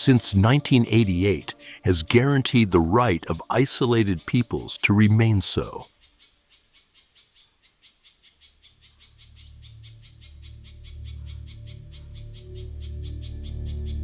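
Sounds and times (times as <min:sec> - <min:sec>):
low music drone: 0:00.0 - 0:05.8, 0:09.2 - 0:14.0
rapid high animal chirping: 0:00.0 - 0:14.0.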